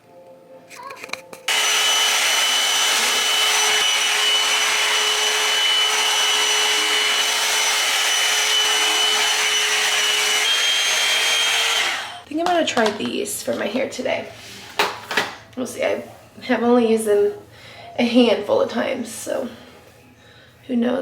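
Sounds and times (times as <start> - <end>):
hair dryer blowing air: 1.5 - 12.3.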